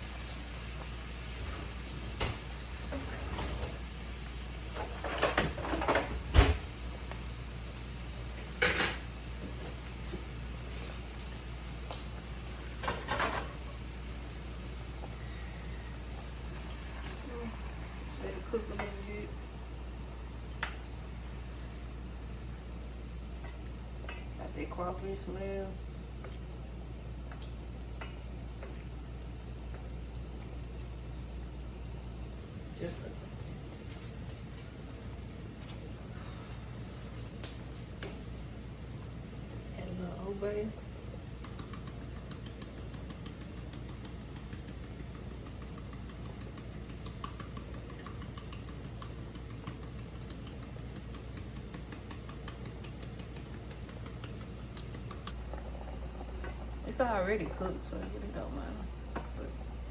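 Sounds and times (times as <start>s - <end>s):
food sizzling in a pan: 0.0s - 32.9s
steady low hum: 0.0s - 59.9s
faint crackles: 40.8s - 59.9s.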